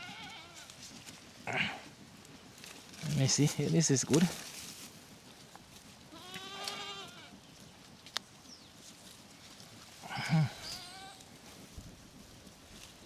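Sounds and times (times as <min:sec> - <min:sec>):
sheep bleating: 0:00.0 - 0:00.8, 0:01.5 - 0:01.9, 0:06.1 - 0:07.4, 0:10.0 - 0:11.4.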